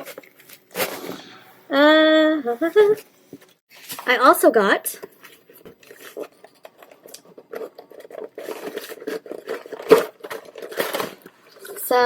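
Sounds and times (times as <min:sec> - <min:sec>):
food packaging rustling: 0:05.0 - 0:12.0.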